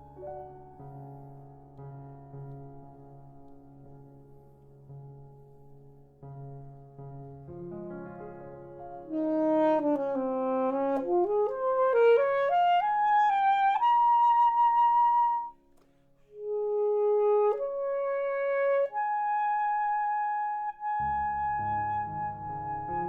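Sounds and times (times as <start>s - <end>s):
alto saxophone playing: 9.0s - 23.0s.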